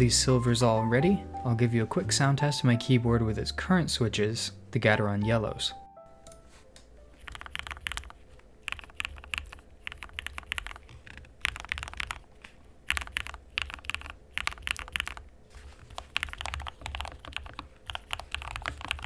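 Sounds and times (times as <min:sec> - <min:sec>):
mechanical keyboard typing: 0:07.2 - 0:12.3, 0:12.9 - 0:19.0.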